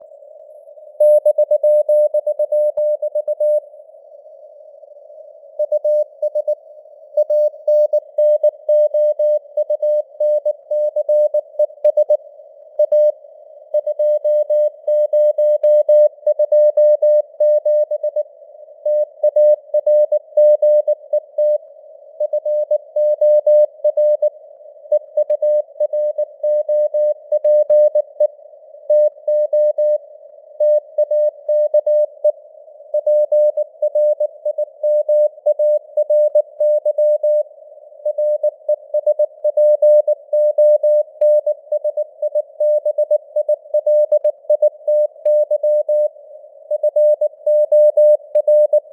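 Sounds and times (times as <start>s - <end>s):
morse code beeps: 46.7s - 48.9s.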